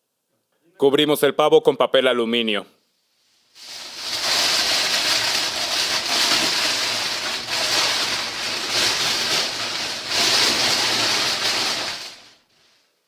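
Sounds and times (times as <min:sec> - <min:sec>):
aluminium foil crinkling: 0:03.6 - 0:12.5.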